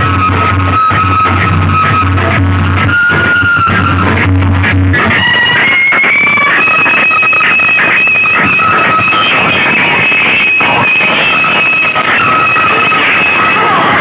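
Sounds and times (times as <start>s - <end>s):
loud distorted music from speakers: 0.0s - 14.0s
steady high-pitched tone: 6.5s - 14.0s.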